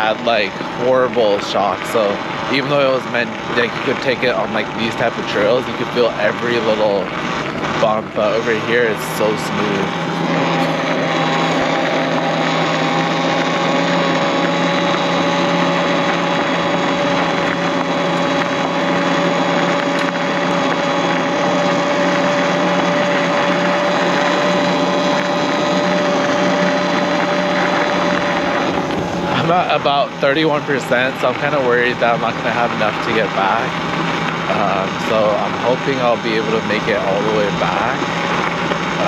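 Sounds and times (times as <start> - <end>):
wind rush: 0.0 - 30.7
electric motor whining: 0.0 - 39.0.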